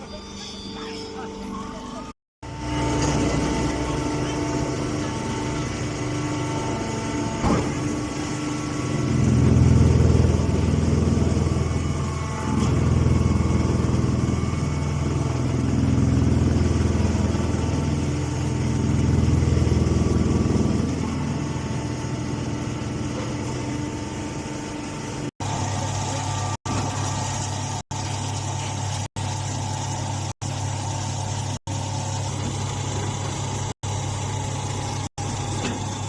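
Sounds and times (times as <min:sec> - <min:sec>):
hay baler humming: 0:02.6 - 0:26.3.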